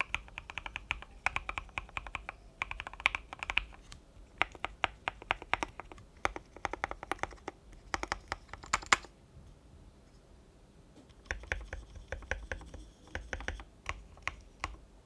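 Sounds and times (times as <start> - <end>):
mechanical keyboard typing: 0.0 - 9.1, 11.1 - 14.8
loud keyboard clack: 4.4 - 9.1.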